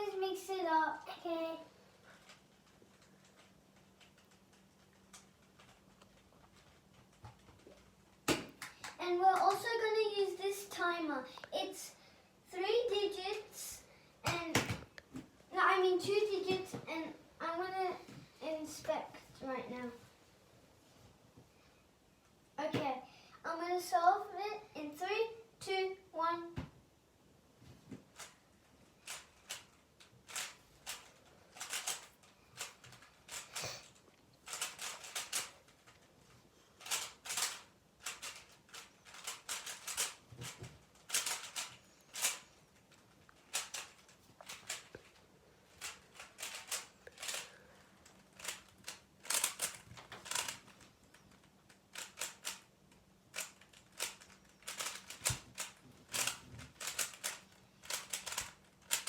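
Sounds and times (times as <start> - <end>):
puzzle cube plastic clicking: 29.0 - 36.1, 36.8 - 45.2, 45.8 - 59.0.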